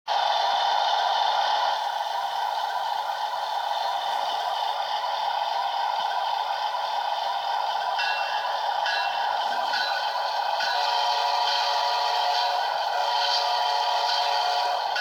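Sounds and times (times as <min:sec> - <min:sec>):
train air horn chord: 0:10.8 - 0:15.0.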